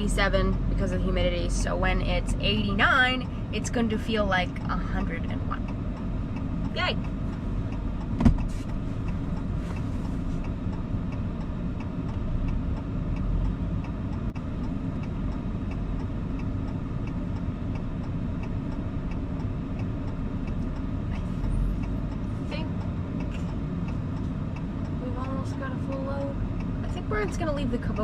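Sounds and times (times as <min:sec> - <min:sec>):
light regular ticking: 0:00.0 - 0:28.0
vehicle engine running: 0:00.0 - 0:28.0
sharp knock: 0:08.2 - 0:08.5.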